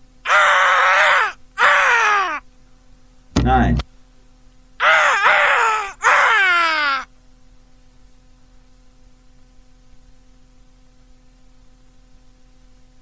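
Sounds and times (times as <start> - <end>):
electrical hum: 0.0 - 13.0
person imitating bird screech: 0.3 - 2.4, 4.8 - 7.1.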